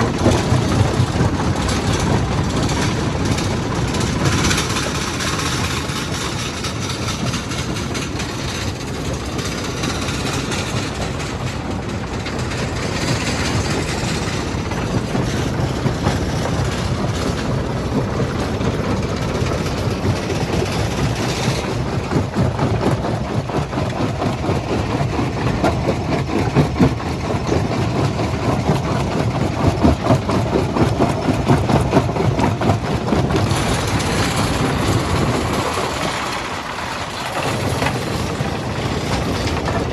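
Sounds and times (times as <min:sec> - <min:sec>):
rocks rattling and knocking: 0:25.6 - 0:39.9
heavy machinery drone: 0:32.9 - 0:39.9.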